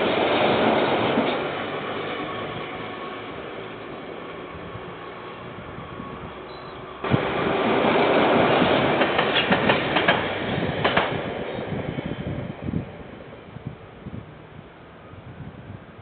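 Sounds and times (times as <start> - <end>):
train passing close by: 0.0 - 16.0
train wheels clacking over rail joints: 7.0 - 11.5.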